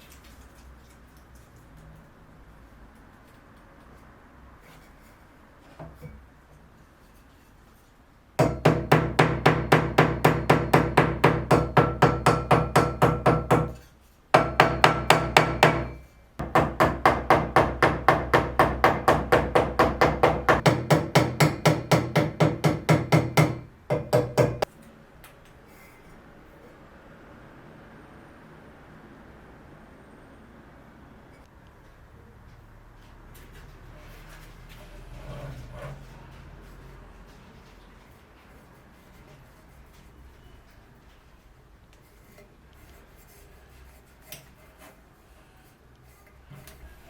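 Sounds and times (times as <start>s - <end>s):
hammer strikes on wood: 8.4s - 13.8s, 14.4s - 24.7s.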